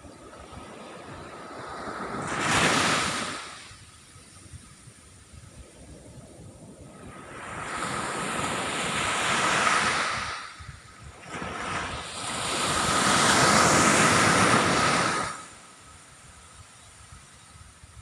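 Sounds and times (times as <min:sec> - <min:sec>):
ocean waves breaking on beach: 0:00.0 - 0:18.0.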